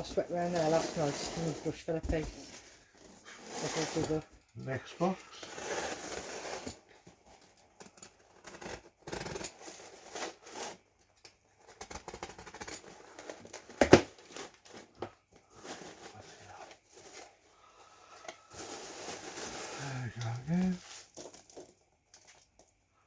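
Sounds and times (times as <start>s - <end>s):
cardboard cutting and tearing: 0.0s - 2.6s, 5.4s - 6.8s, 8.2s - 10.8s, 11.6s - 15.0s, 18.5s - 21.3s.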